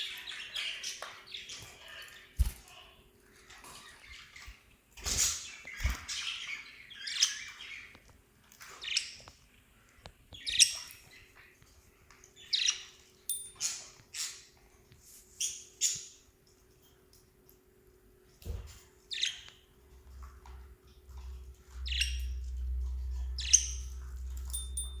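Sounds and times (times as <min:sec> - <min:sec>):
parrots chirping and squawking: 0:03.5 - 0:08.0, 0:21.1 - 0:25.0.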